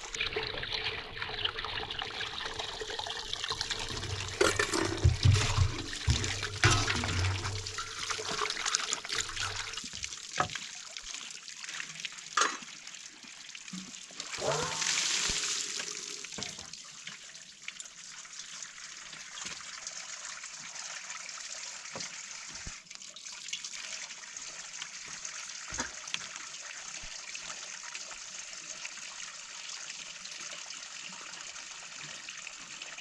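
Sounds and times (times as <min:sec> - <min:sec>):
water trickling: 0:00.0 - 0:21.1.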